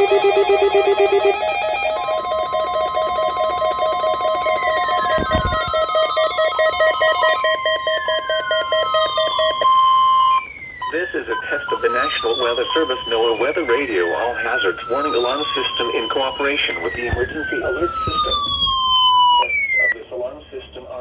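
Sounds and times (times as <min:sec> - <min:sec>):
falling electronic siren sweeps: 0:00.0 - 0:20.0
steady high alarm tone: 0:00.0 - 0:20.0
short thump: 0:16.9 - 0:18.9.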